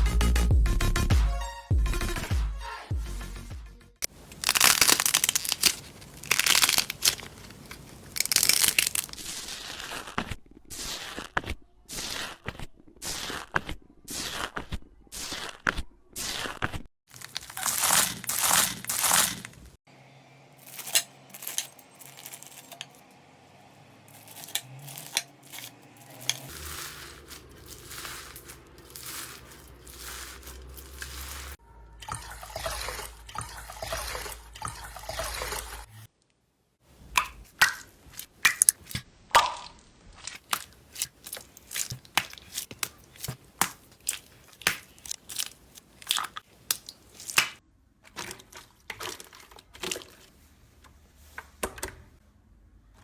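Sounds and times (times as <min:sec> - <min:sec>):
slime squishing and crackling: 0:04.3 - 0:15.6, 0:16.2 - 0:19.7, 0:38.2 - 0:50.2.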